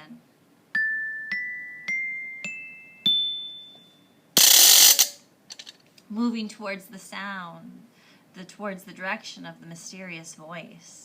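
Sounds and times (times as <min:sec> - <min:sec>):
glockenspiel notes ringing: 0:00.8 - 0:05.1.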